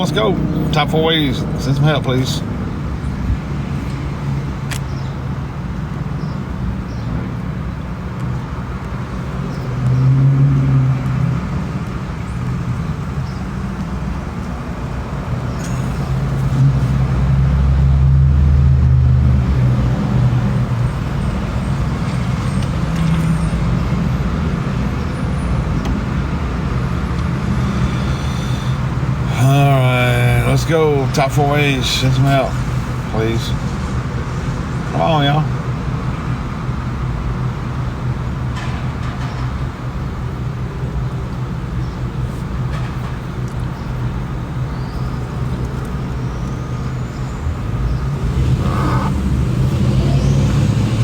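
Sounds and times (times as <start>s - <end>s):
car and road noise: 0.0s - 51.0s.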